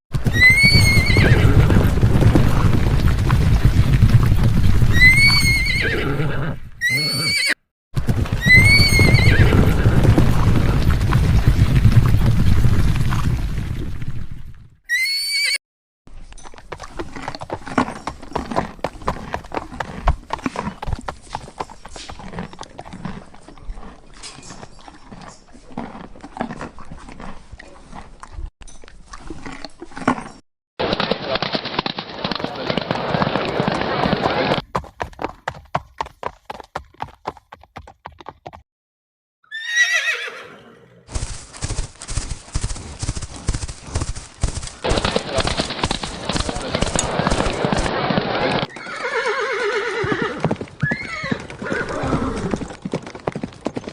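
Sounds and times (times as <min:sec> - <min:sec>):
hoofbeats clopping: 0:00.1 - 0:13.5, 0:16.2 - 0:38.6, 0:41.1 - 0:53.9
horse whinnying: 0:00.2 - 0:02.8, 0:04.9 - 0:07.6, 0:08.3 - 0:10.8, 0:14.9 - 0:15.6, 0:39.4 - 0:41.0, 0:48.5 - 0:52.7.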